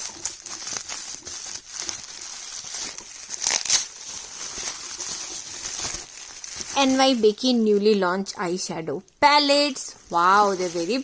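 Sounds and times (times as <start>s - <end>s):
packaging tearing crackle: 0.0s - 7.0s
packaging crinkling and rustling: 0.0s - 8.0s.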